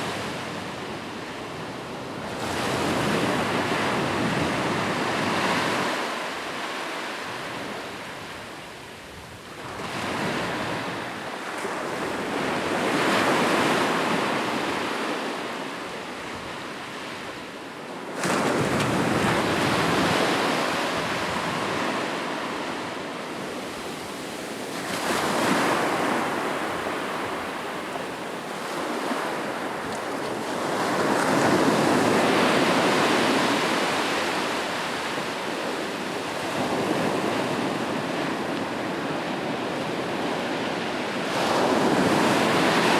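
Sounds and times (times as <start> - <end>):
ocean waves breaking on shore: 17.9 - 42.9.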